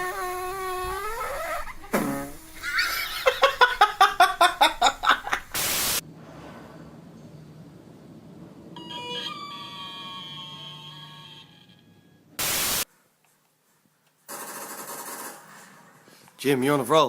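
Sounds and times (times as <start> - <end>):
static hiss: 0.0 - 6.0, 12.4 - 12.9.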